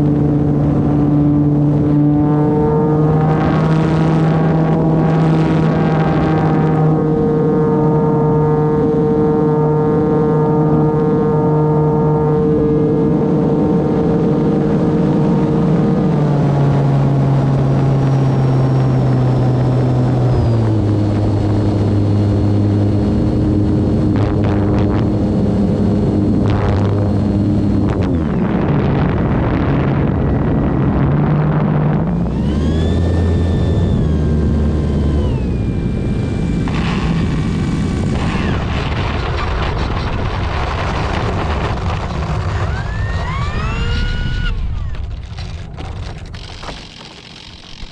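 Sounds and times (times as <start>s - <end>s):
electric motor and propeller whine: 0.0s - 47.9s
wind rush: 9.9s - 47.0s.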